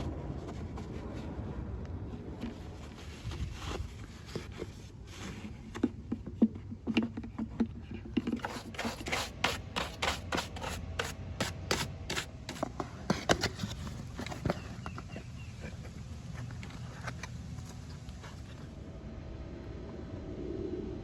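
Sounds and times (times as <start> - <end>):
short scraping strokes: 8.3 - 12.7
hand tool scraping metal parts: 8.3 - 13.5.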